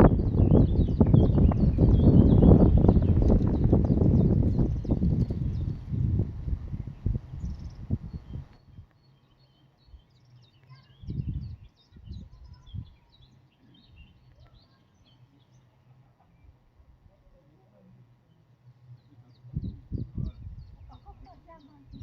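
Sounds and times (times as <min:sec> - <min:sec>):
low thumps and rumbles: 0:00.0 - 0:08.5
small birds chirping: 0:00.0 - 0:22.0.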